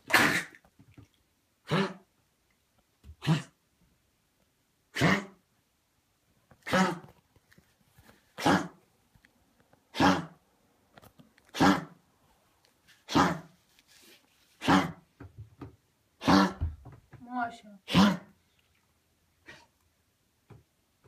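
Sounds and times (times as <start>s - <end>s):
dog coughing: 0.0s - 0.6s, 1.6s - 2.0s, 3.2s - 3.6s, 4.9s - 5.4s, 6.6s - 7.1s, 8.4s - 8.8s, 9.9s - 10.4s, 11.5s - 12.0s, 13.1s - 13.5s, 14.6s - 15.0s, 16.2s - 16.7s, 17.9s - 18.3s.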